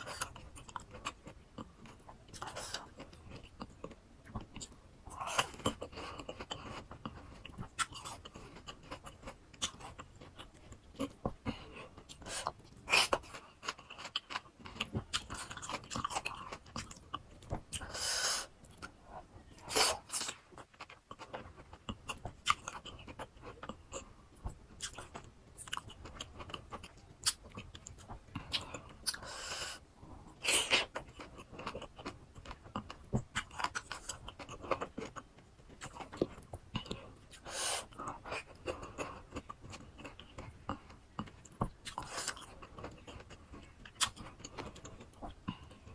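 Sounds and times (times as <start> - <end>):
chewing crisp fruit: 30.4 - 45.9.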